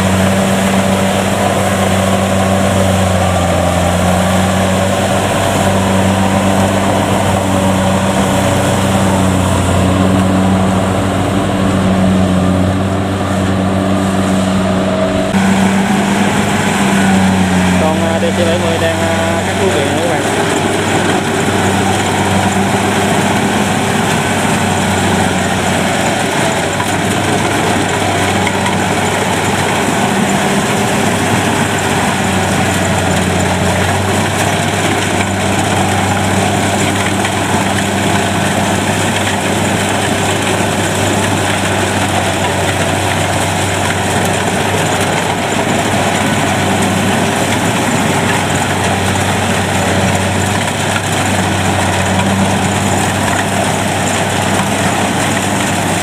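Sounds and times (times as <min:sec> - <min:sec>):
clatter of threshing machinery: 0:00.0 - 0:56.0
combine harvester engine humming: 0:00.0 - 0:56.0.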